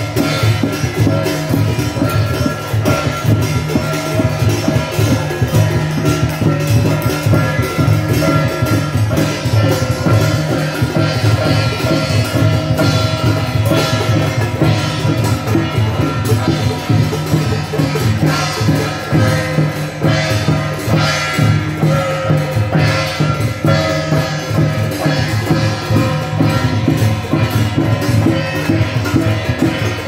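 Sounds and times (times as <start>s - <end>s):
drums and percussion: 0.0s - 30.0s.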